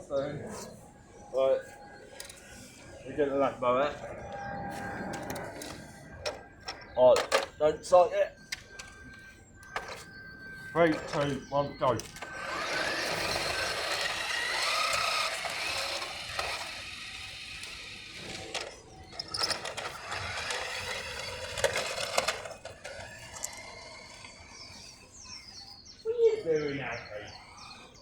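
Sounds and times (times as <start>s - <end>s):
toy car motors whirring: 8.4s - 25.0s.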